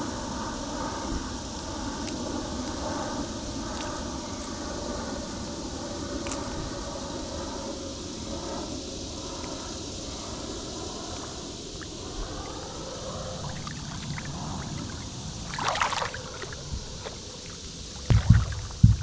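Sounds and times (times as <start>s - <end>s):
creek water running: 13.2s - 19.0s
water splashing: 13.4s - 19.0s.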